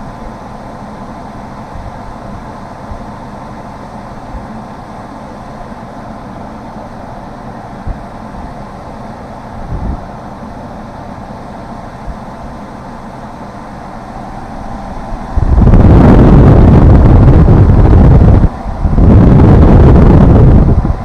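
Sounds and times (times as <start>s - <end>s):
air conditioner airflow whoosh: 0.0s - 21.0s
wind buffeting microphone: 14.8s - 21.0s.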